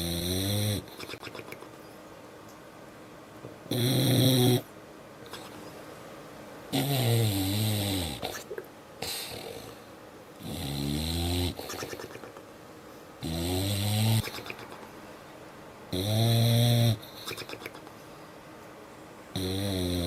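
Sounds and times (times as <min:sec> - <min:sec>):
dog snoring: 0:00.0 - 0:01.6, 0:03.7 - 0:04.7, 0:06.7 - 0:12.2, 0:13.2 - 0:14.8, 0:15.9 - 0:17.8, 0:19.3 - 0:20.0.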